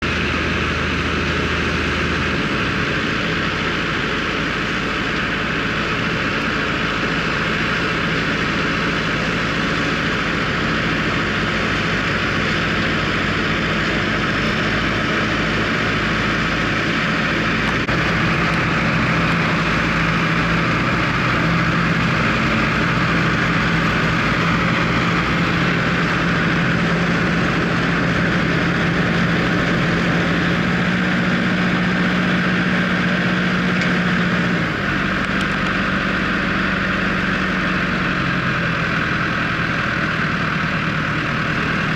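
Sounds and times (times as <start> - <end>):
harvester mechanical rattle: 0.0 - 41.9
tractor engine running: 0.0 - 41.9.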